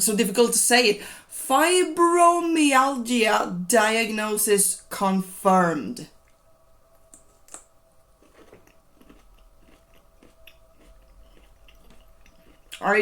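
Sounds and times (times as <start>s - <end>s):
chewing a firm carrot: 7.2s - 12.8s.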